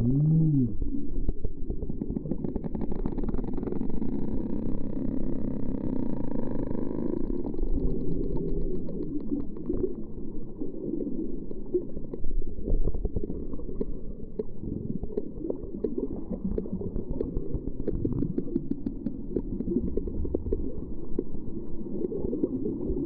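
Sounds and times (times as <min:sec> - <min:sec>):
low-pitched water noise: 0:00.0 - 0:23.0
dolphin clicks underwater: 0:15.2 - 0:21.2.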